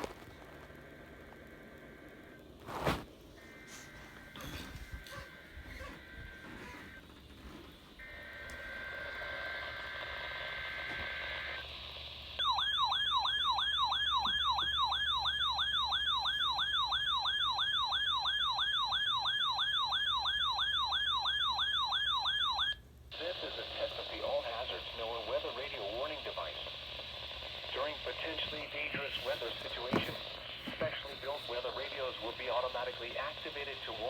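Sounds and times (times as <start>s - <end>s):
warbling siren alarm: 12.4s - 22.8s.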